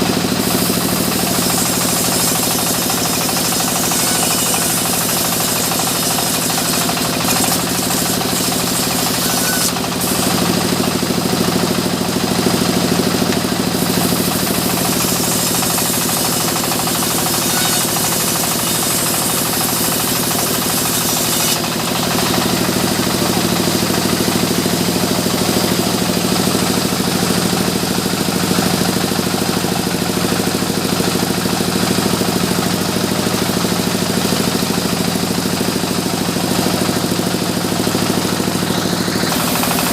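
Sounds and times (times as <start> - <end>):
sawmill machinery with knocking engine: 0.0 - 39.9.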